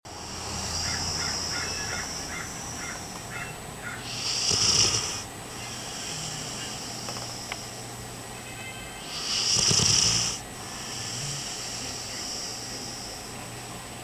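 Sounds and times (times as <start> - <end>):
dog snoring: 0.2 - 3.0, 4.0 - 7.6, 9.0 - 13.4.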